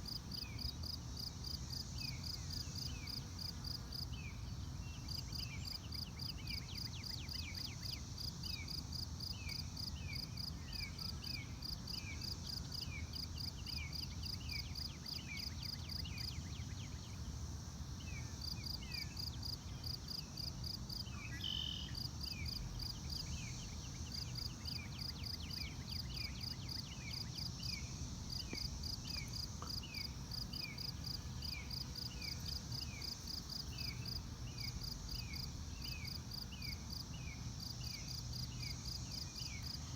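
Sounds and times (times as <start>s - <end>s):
high insect trill: 17.3s - 39.9s.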